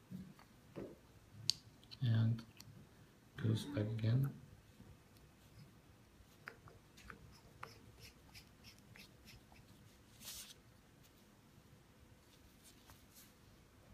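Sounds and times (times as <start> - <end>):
pencil clicks and taps: 6.3 - 9.6.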